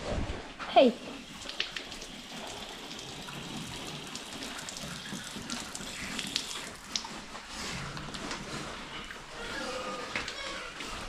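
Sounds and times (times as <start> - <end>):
water running and splashing: 1.0 - 7.4.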